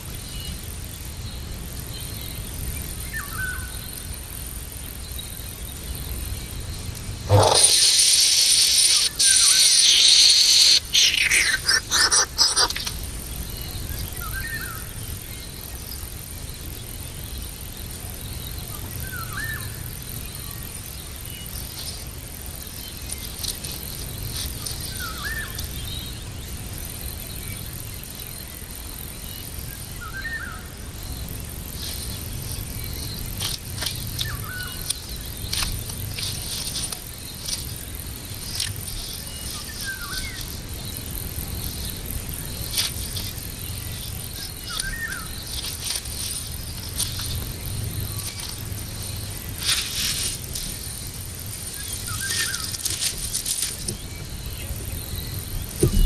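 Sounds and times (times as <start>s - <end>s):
crackling and rustling: 6.9s - 13.2s, 21.4s - 25.8s, 31.6s - 56.0s
squeaky animal call: 7.3s - 12.9s.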